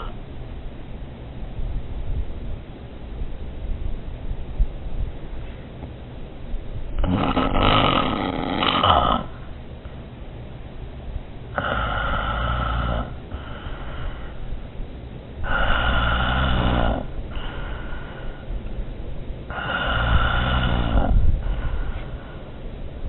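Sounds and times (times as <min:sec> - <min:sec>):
person snoring: 0:07.0 - 0:09.4, 0:11.6 - 0:14.3, 0:15.4 - 0:18.0, 0:19.5 - 0:21.2
faint breath: 0:11.6 - 0:14.7, 0:15.4 - 0:18.7, 0:19.5 - 0:22.7.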